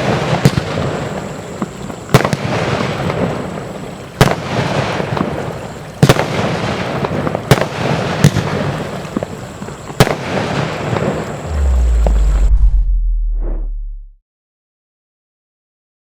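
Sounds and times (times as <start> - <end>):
deep low hum: 11.5 - 14.2.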